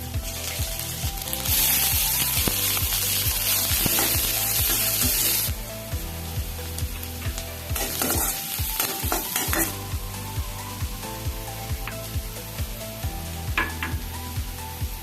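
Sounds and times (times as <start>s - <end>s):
background music with steady beat: 0.0s - 15.0s
food sizzling in a pan: 0.0s - 15.0s.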